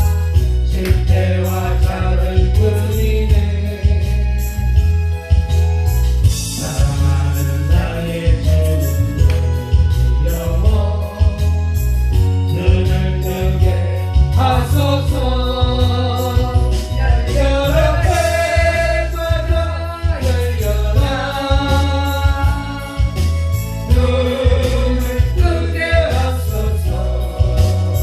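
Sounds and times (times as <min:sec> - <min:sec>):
accompaniment with bass and beat: 0:00.0 - 0:28.0
person singing with vibrato: 0:06.4 - 0:28.0.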